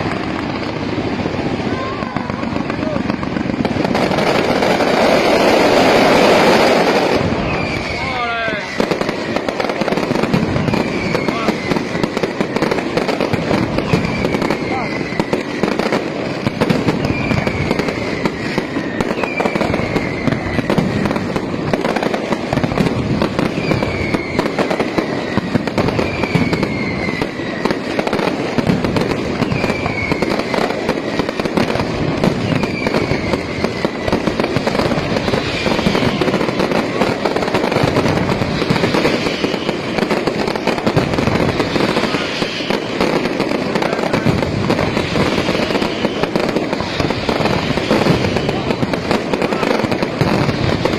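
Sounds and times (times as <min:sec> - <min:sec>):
fireworks crackling barrage: 0:00.0 - 0:50.9
fireworks whistles falling in pitch: 0:00.0 - 0:50.9.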